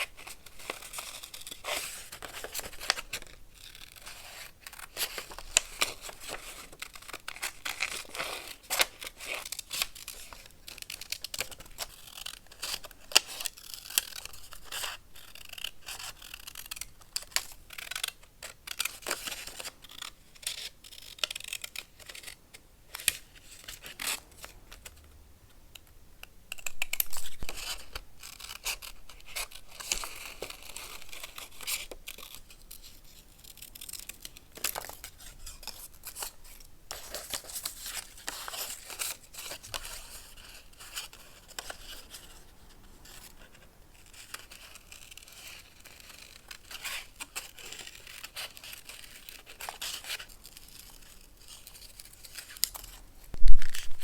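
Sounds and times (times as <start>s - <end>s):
scissors snipping paper: 0.2s - 23.2s
paper rustling: 43.0s - 54.0s.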